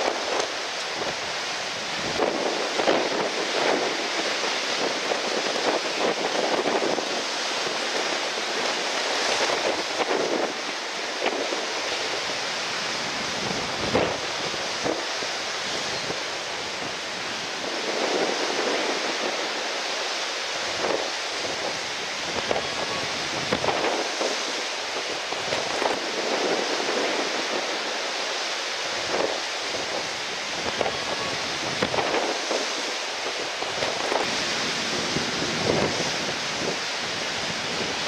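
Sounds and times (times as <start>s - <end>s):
breaking surf: 0.0s - 38.0s
wind buffeting microphone: 0.0s - 38.0s.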